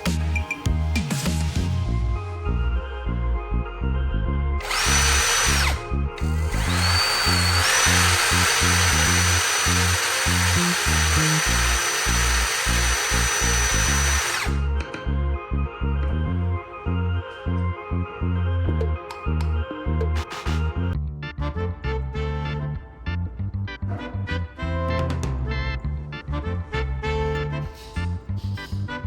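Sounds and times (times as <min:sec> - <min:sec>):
background music: 0:00.0 - 0:29.0
power tool motor whining: 0:04.6 - 0:14.9.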